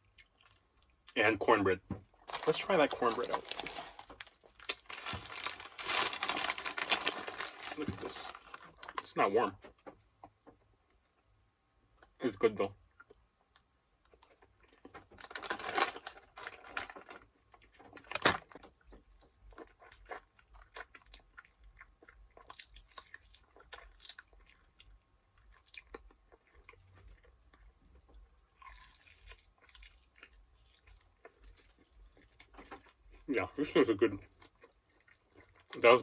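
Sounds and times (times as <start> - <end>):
person chewing food: 0.0 - 1.1, 12.9 - 15.8, 17.3 - 33.3, 34.1 - 36.0.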